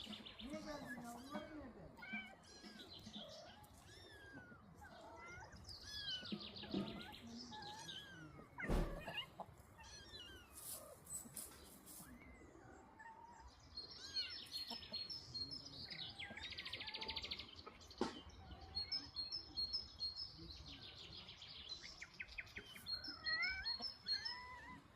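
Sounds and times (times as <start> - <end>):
small birds chirping and trilling: 0.0 - 24.9
single thump: 8.6 - 9.2.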